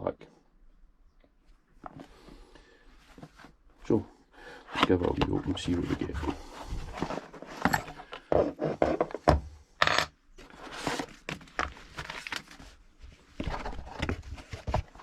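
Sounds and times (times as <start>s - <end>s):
packaging being handled: 10.4s - 15.0s.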